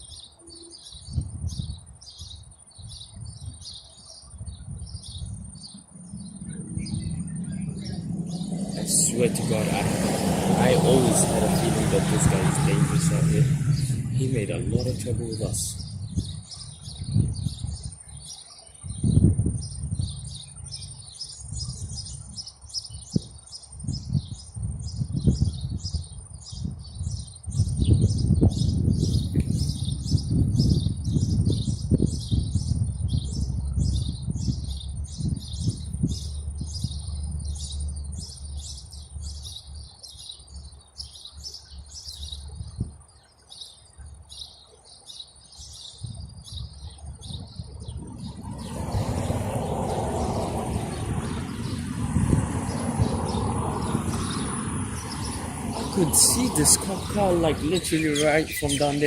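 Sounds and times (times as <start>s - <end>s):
low rumbling on microphone: 2.8s - 18.3s, 18.9s - 40.0s, 46.0s - 59.0s
steady high-pitched whine: 4.7s - 17.1s.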